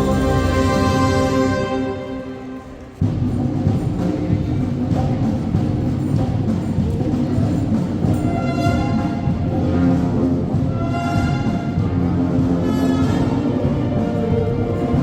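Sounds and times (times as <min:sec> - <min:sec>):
low brass: 0:00.0 - 0:03.0, 0:08.0 - 0:15.0
sustained horn notes: 0:00.0 - 0:03.0, 0:08.2 - 0:15.0
wind band playing: 0:00.0 - 0:03.0, 0:08.1 - 0:15.0
heavy percussion: 0:00.0 - 0:15.0.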